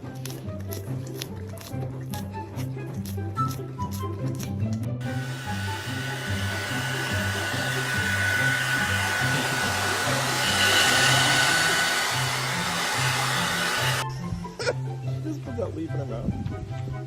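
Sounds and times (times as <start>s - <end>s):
background music with bass line: 0.0s - 10.9s, 13.0s - 17.0s
hair dryer blowing: 5.0s - 14.0s.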